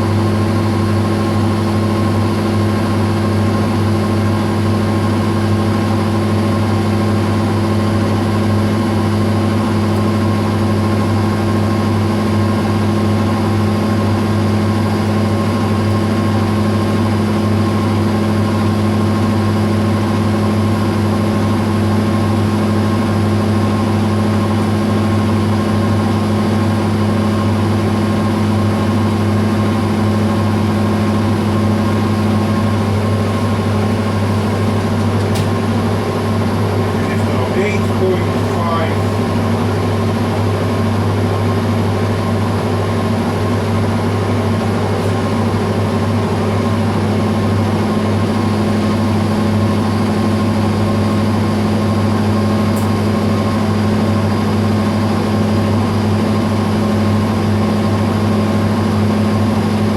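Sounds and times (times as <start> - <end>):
metal lathe humming: 20.7 - 54.6.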